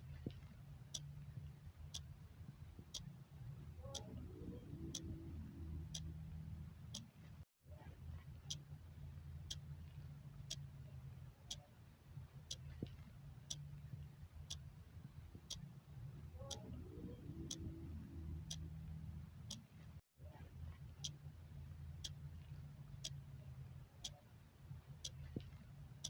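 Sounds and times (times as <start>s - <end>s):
low background rumble: 0.0s - 26.0s
clock ticking: 3.9s - 6.1s, 16.5s - 18.7s.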